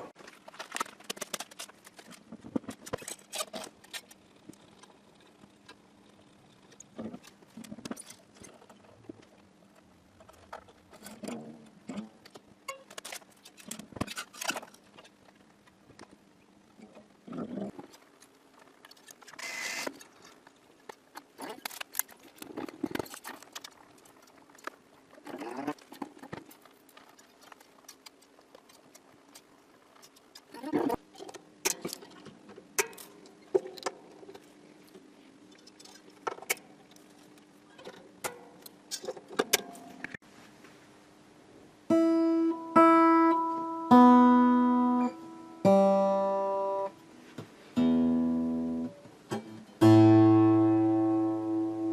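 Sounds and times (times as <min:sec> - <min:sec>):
clicks and rustles of strings: 0:00.0 - 0:05.8, 0:06.6 - 0:40.8
guitar strings plucked: 0:41.9 - 0:47.0, 0:47.8 - 0:51.9.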